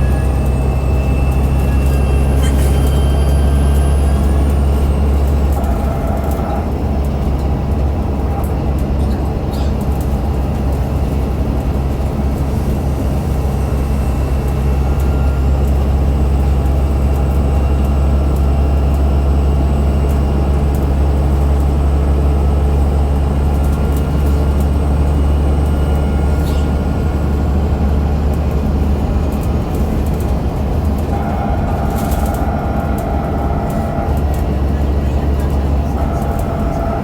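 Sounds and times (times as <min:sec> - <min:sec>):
faint high axle whine: 0:00.0 - 0:11.3, 0:12.0 - 0:37.0
bus engine low drone: 0:00.0 - 0:37.0.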